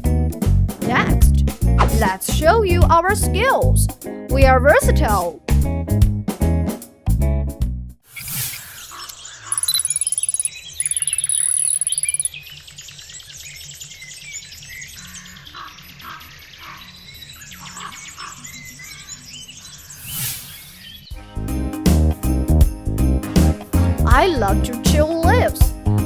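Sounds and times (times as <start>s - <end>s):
shrill fast-pulsing high buzz: 8.2s - 15.4s
bird chirps: 8.2s - 21.2s
background music with steady beat: 21.2s - 26.0s.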